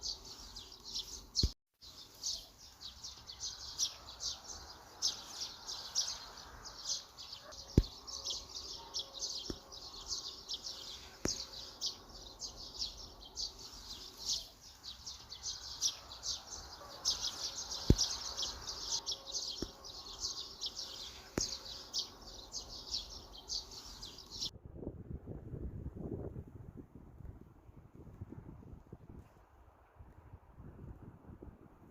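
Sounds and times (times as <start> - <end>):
songbirds chirping: 0.0 - 24.5.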